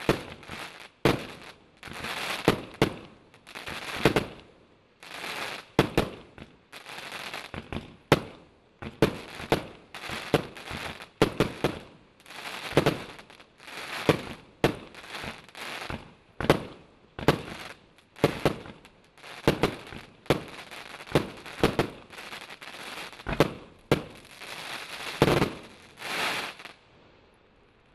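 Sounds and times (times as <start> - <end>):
hissing crackle: 17.2 - 26.9
firework barrage bangs: 23.2 - 24.2.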